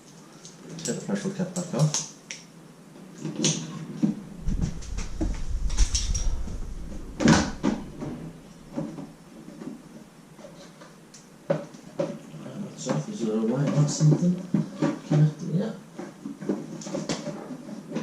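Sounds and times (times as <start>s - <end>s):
low rumble: 4.2s - 9.2s.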